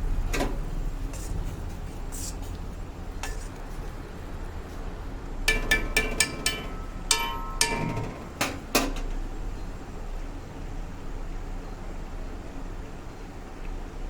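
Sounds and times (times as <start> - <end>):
metal utensil clinking on pot: 5.5 - 9.1.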